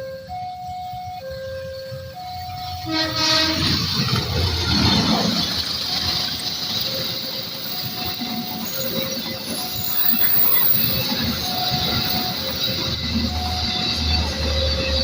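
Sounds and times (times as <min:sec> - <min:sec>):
train horn: 0:00.0 - 0:05.4
level crossing alarm: 0:00.0 - 0:15.0
passing train rumble and hiss: 0:00.0 - 0:15.0.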